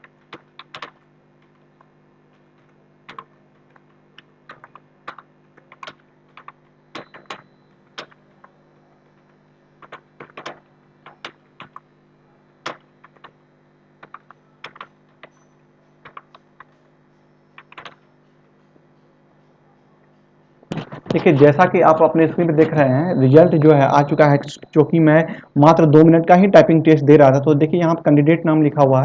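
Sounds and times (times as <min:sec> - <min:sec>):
low steady hum: 0:00.0 - 0:29.0
keyboard key clicks: 0:00.3 - 0:01.0, 0:14.0 - 0:15.4.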